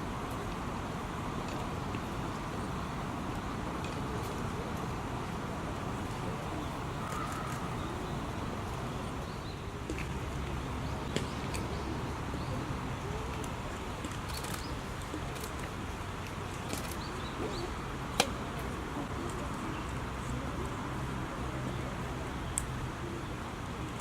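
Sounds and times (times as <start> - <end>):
short bird chirps: 6.5 - 8.3.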